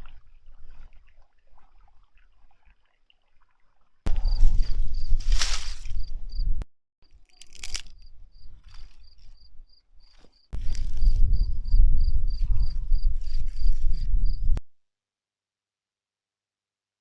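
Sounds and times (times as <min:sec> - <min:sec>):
cricket chirping: 0:04.1 - 0:05.2.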